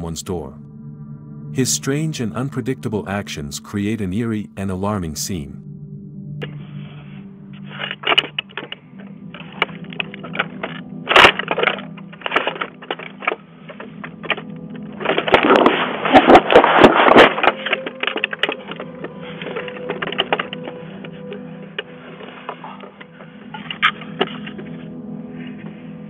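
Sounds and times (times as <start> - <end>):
sharp cracks and knocks: 8.0 - 21.9.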